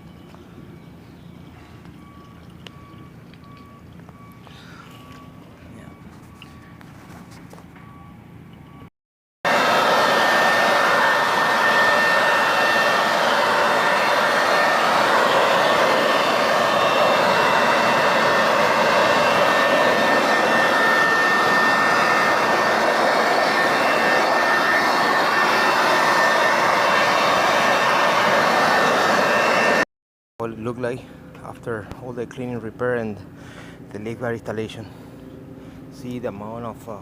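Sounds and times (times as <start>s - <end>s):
air blower rushing: 9.5s - 29.8s
high whine: 9.5s - 29.8s.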